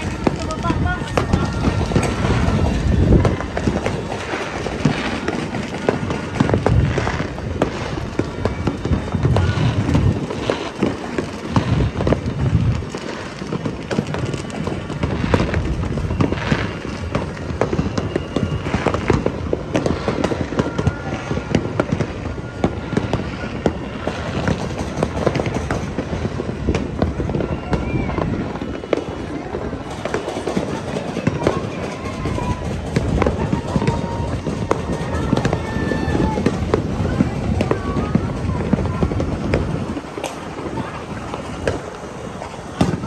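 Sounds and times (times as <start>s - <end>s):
deep firework booms: 0.0s - 43.0s
firecrackers cracking and popping: 0.0s - 43.0s.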